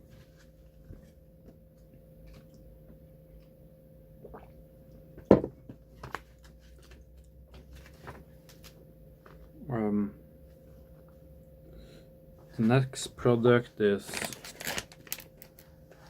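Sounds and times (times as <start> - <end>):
knocks on a table: 5.3 - 5.8
snack packaging rustling: 14.0 - 16.0.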